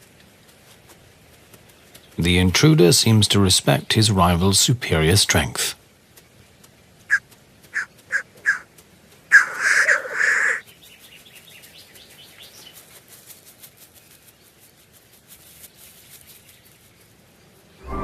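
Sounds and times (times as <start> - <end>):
faint rapid ticking: 0.0 - 9.3
grouse clucking: 7.0 - 10.6
grouse hissing call: 7.1 - 8.7, 9.3 - 10.6.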